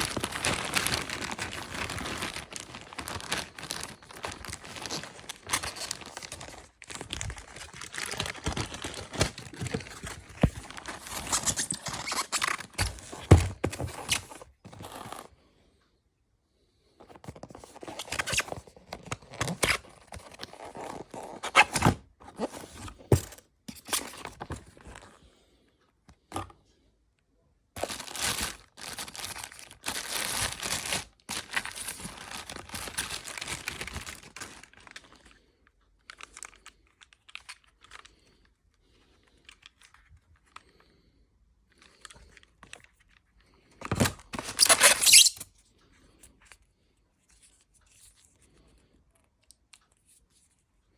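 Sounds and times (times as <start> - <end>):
packaging tearing and crinkling: 0.0 - 15.3, 27.8 - 35.2, 43.9 - 45.4.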